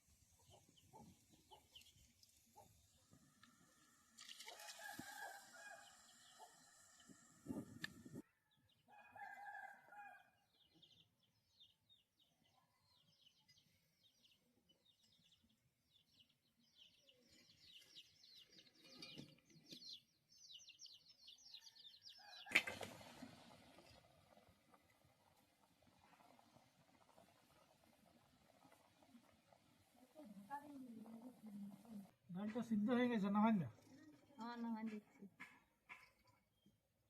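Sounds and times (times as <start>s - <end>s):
small birds twittering: 0.2s - 3.8s, 10.6s - 22.5s.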